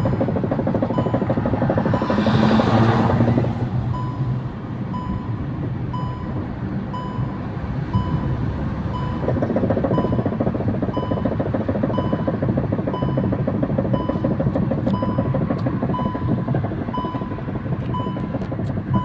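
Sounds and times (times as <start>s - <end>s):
short beeps: 0.0s - 1.3s, 3.9s - 4.3s, 4.9s - 7.4s, 8.0s - 8.3s, 14.9s - 19.0s
rapid knocking from wheel: 0.0s - 4.3s, 6.0s - 19.0s
car driving: 0.0s - 19.0s.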